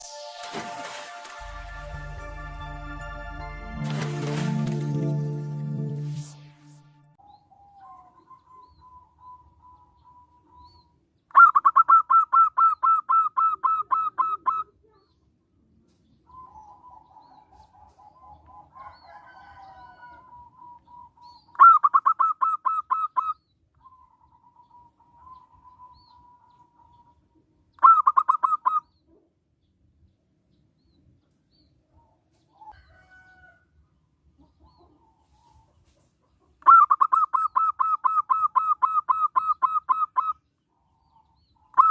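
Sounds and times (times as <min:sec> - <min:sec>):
dove calling in rapid bursts: 0:07.5 - 0:14.8, 0:20.3 - 0:29.2, 0:36.4 - 0:40.5, 0:41.1 - 0:41.9
drawn-out bird calls: 0:20.3 - 0:29.1, 0:36.4 - 0:41.9.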